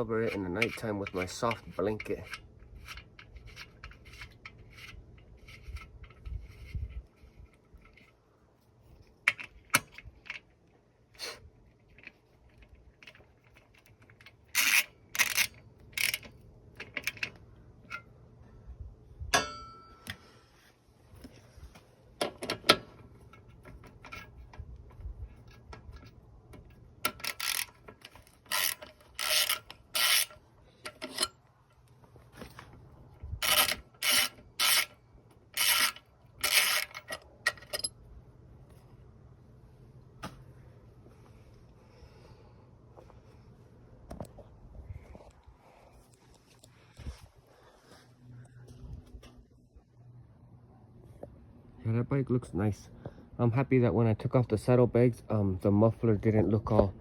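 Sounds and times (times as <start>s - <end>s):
ratchet wrench clicking: 14.5s - 16.3s, 27.1s - 30.4s, 33.4s - 34.9s, 35.6s - 37.9s.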